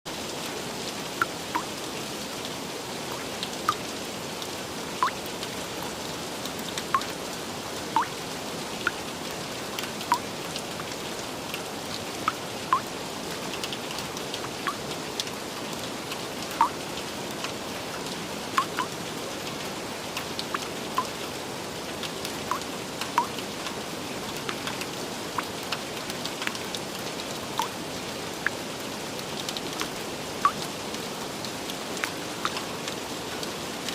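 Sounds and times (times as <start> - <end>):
gentle steady rain: 0.1 - 33.9
water drops plinking: 1.2 - 1.7, 16.6 - 16.8, 18.6 - 18.9.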